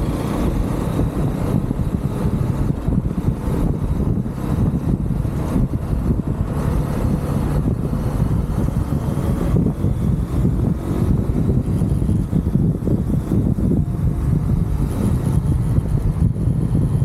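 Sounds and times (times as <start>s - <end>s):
motorcycle engine running: 0.0s - 17.0s
wind rushing over microphone: 0.0s - 17.0s.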